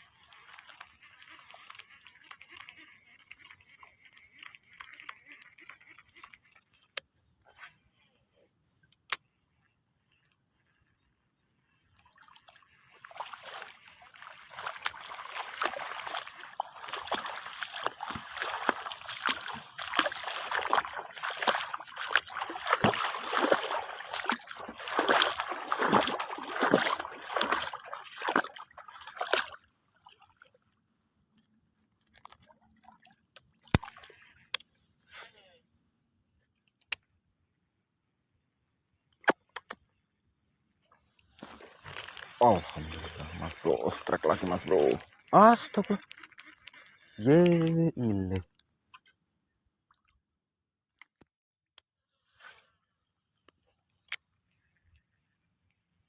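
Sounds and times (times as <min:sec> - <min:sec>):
water splashing and sloshing: 0:00.0 - 0:06.9, 0:11.8 - 0:34.8, 0:40.8 - 0:48.6.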